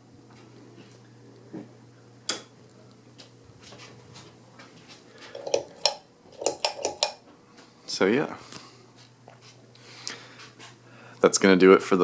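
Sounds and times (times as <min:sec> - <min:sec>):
low fan hum: 0:00.0 - 0:12.0
ceiling fan mechanism clicks: 0:05.2 - 0:07.7.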